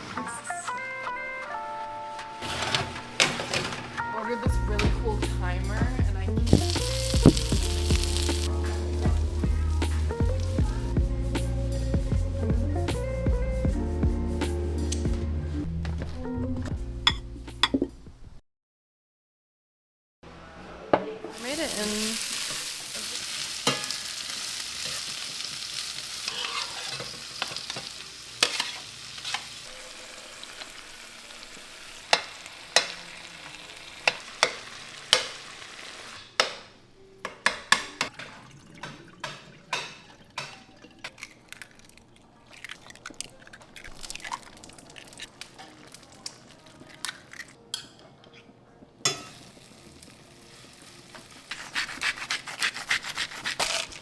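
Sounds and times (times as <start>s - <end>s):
food sizzling in a frying pan: 6.5s - 10.9s, 21.3s - 36.2s, 49.1s - 52.3s.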